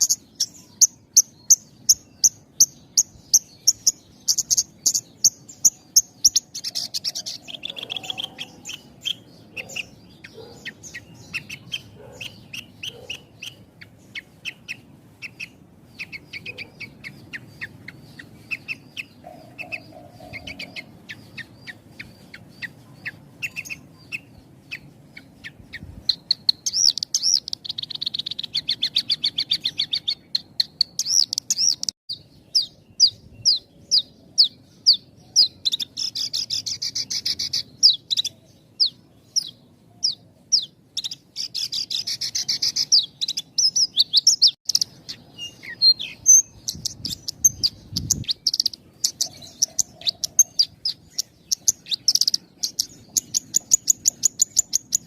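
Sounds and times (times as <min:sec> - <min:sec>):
lark singing rapid chirps: 0:00.0 - 0:55.0.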